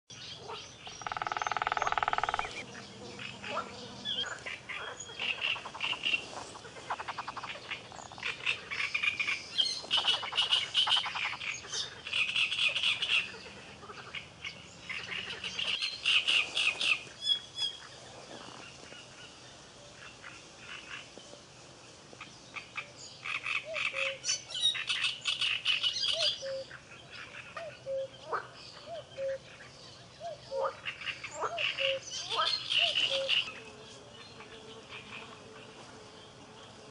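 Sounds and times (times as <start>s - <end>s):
frogs croaking: 0.4s - 21.5s, 22.2s - 36.9s
soft frog chirps: 0.8s - 14.2s.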